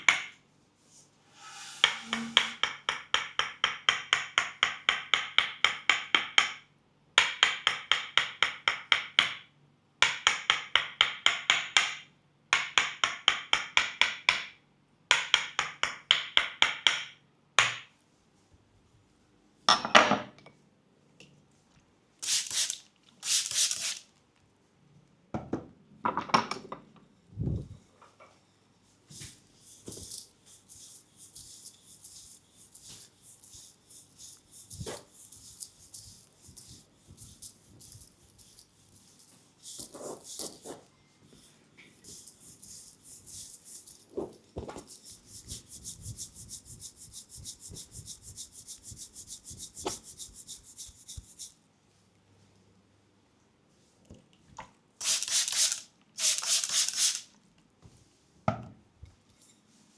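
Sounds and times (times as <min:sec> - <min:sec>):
faint rubbing: 0:01.0 - 0:02.6
wooden mallet tapping wood: 0:01.8 - 0:06.6, 0:07.2 - 0:09.4, 0:10.0 - 0:14.5.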